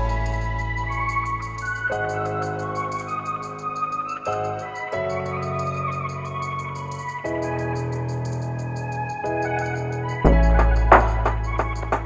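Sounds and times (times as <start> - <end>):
steady beat: 0.0 - 2.4, 10.3 - 12.0
electronic keyboard chords: 0.0 - 12.0.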